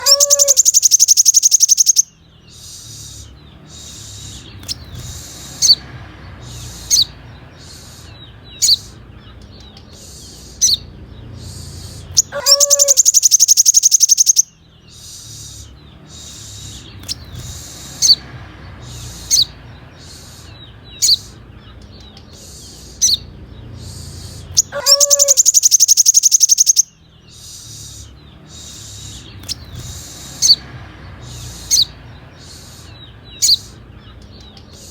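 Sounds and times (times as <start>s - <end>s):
sunbird high rapid trill: 0.0s - 9.0s, 10.0s - 21.4s, 22.4s - 33.8s.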